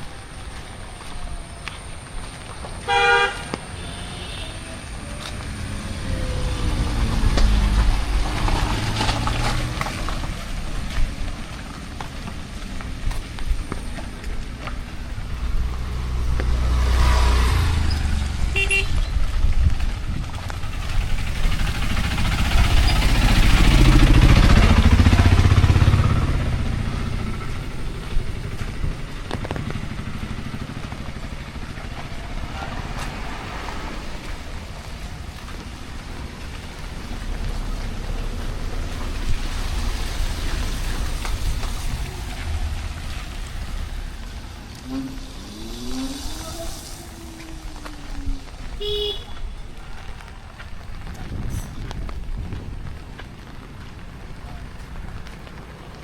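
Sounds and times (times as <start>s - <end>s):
motor vehicle passing: 0.1s - 56.0s
vehicle horn: 2.8s - 4.8s, 18.5s - 19.1s, 48.8s - 49.7s.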